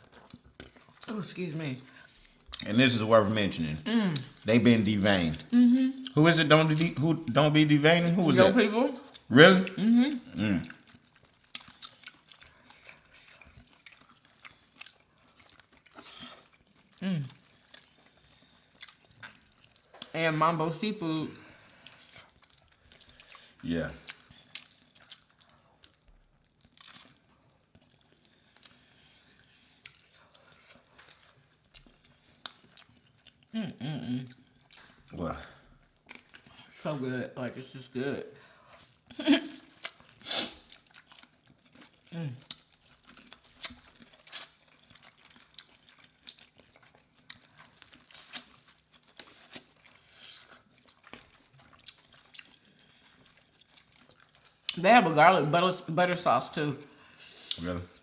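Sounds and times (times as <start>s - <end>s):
chewing and mouth smacks: 0.0s - 1.2s, 2.0s - 2.8s, 4.1s - 4.5s, 8.9s - 20.2s, 21.4s - 33.5s, 34.2s - 36.8s, 38.5s - 54.8s.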